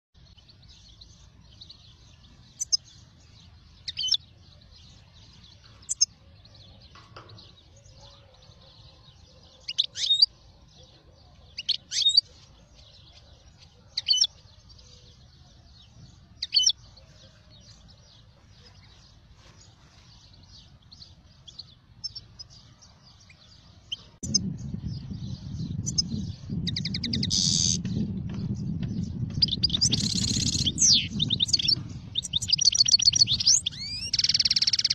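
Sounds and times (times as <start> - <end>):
birds chirping: 0.2 - 34.9
bird trilling call: 9.6 - 10.3, 11.6 - 12.4, 25.8 - 27.9, 29.4 - 34.9
low steady rumble: 24.2 - 33.6.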